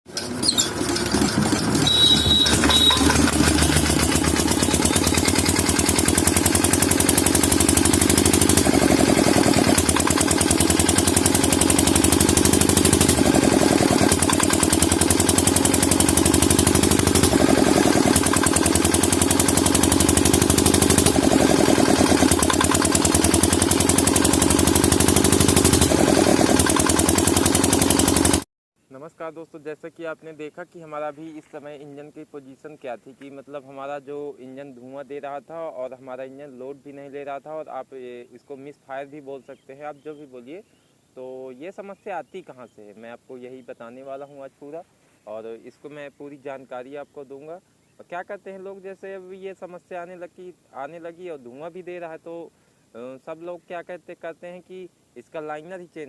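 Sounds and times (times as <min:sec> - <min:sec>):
diesel engine misfiring: 0:00.1 - 0:28.4.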